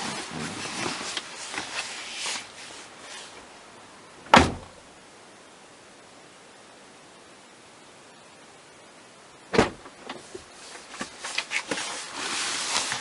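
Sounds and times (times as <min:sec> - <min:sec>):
rustling: 0:00.0 - 0:03.6, 0:09.7 - 0:13.0
car door shutting: 0:04.2 - 0:04.8, 0:09.5 - 0:10.2.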